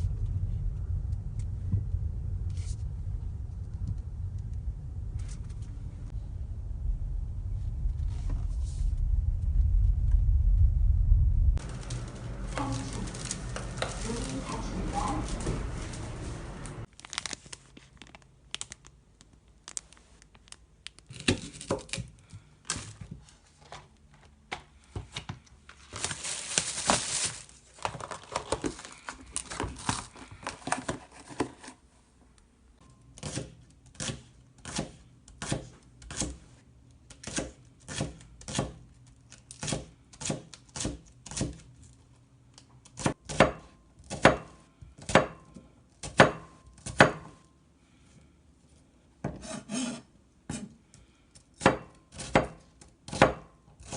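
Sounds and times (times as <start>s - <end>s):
packaging rustling: 11.6s - 22.0s, 25.6s - 31.8s
knife chopping on cutting board: 33.2s - 36.4s.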